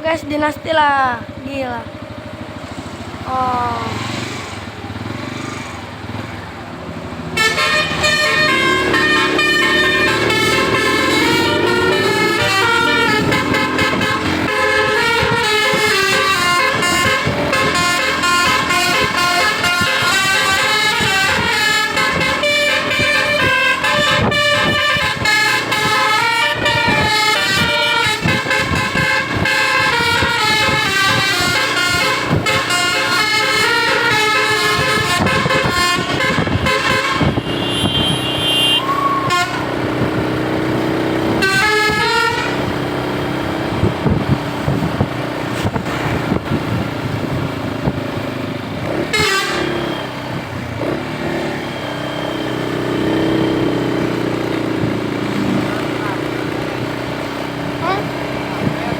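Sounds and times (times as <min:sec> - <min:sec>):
musical bus horn melody: 0:07.2 - 0:45.0, 0:48.9 - 0:54.9
horn toots and pitch glides: 0:07.2 - 0:48.0, 0:48.8 - 0:58.9.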